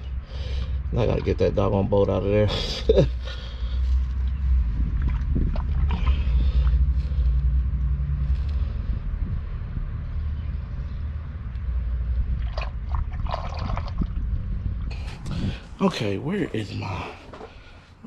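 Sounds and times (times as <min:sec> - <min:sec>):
wind buffeting microphone: 0:03.6 - 0:16.8.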